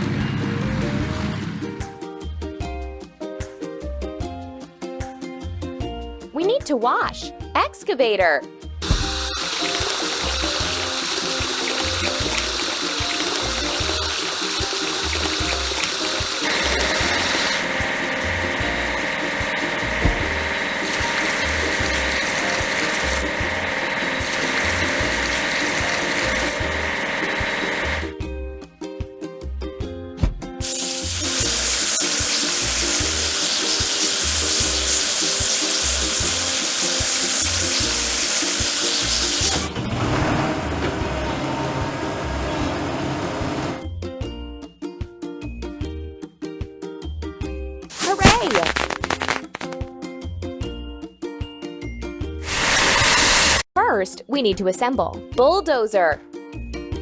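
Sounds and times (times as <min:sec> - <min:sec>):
background music with steady beat: 0:00.0 - 0:48.0, 0:49.8 - 0:53.6, 0:54.2 - 0:57.0
cartoon water spraying: 0:08.8 - 0:28.1, 0:30.6 - 0:39.8, 0:47.9 - 0:49.8, 0:52.4 - 0:53.7
spraying water hiss: 0:30.6 - 0:39.7, 0:52.4 - 0:53.6.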